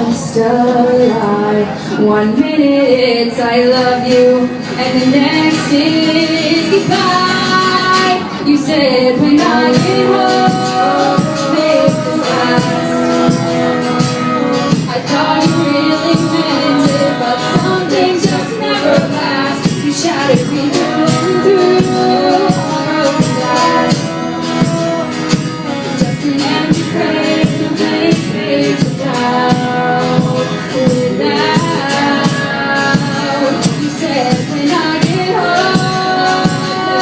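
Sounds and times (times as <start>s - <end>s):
live band playing: 0.0s - 37.0s
person singing long notes: 8.9s - 37.0s
percussion beat: 9.4s - 37.0s.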